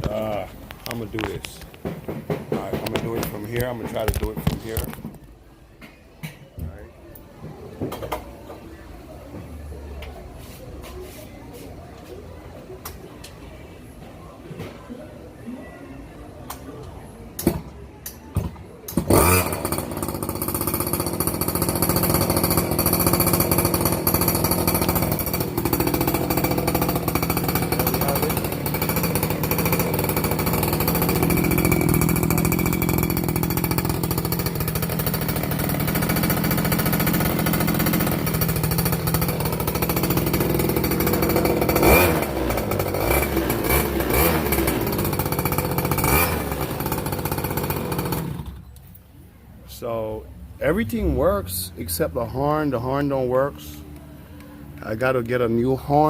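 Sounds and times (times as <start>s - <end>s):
small engine rattly buzz: 19.0s - 48.7s.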